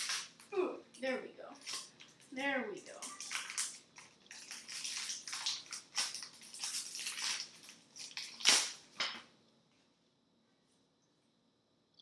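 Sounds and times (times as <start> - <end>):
plastic wrapper crinkling: 0.0 - 0.6, 1.6 - 9.3.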